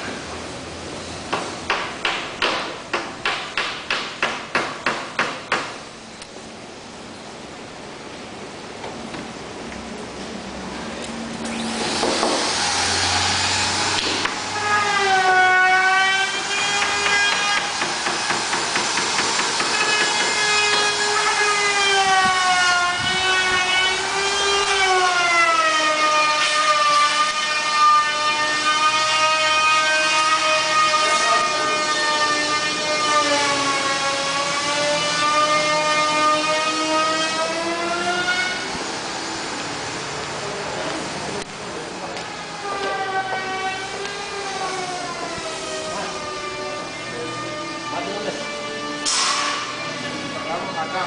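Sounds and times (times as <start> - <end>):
loud whining noise: 10.2 - 51.0.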